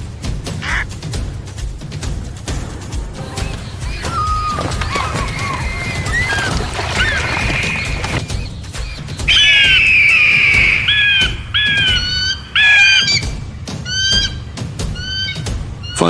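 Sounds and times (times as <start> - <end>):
sharp slapping noises: 0.0 - 9.2
eagles yelping: 0.6 - 0.8, 2.5 - 16.0.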